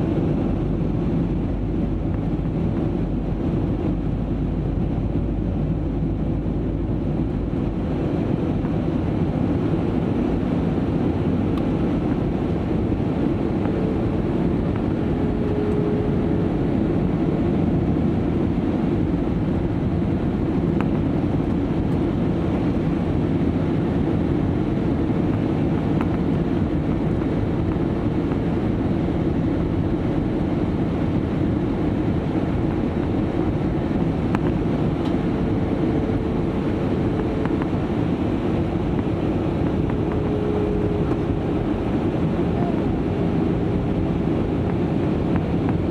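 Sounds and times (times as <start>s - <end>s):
airliner cabin engine rush: 0.0s - 45.9s.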